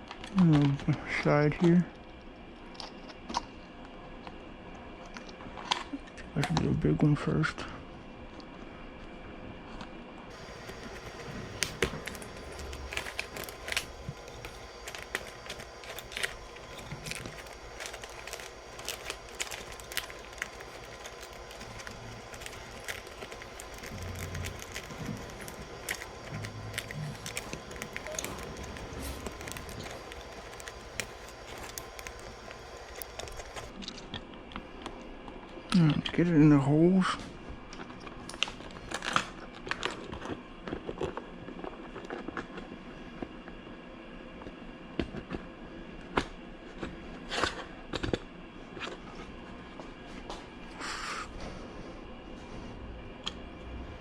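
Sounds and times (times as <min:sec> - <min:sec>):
faint steady hum: 0:00.0 - 0:54.0
plastic and metal parts clicking: 0:10.3 - 0:33.7.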